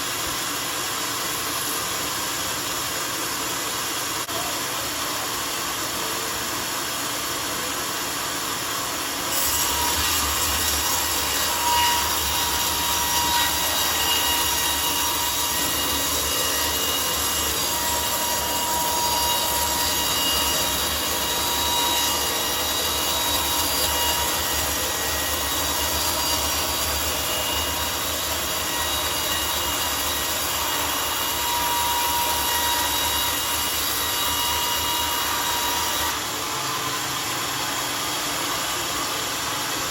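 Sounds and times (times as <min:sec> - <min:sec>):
sawmill blade cutting log: 0:00.0 - 0:39.9.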